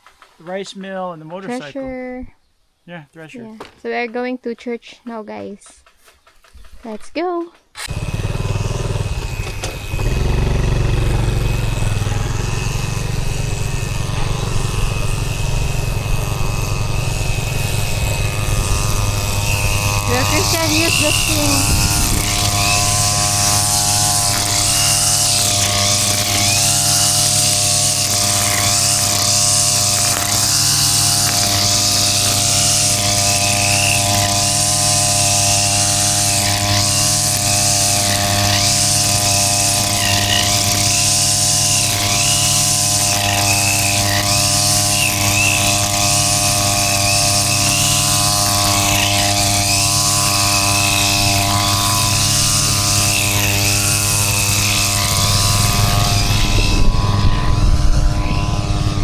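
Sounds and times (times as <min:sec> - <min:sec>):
wind or road noise: 0:07.8 - 0:31.9, 0:51.2 - 0:59.0.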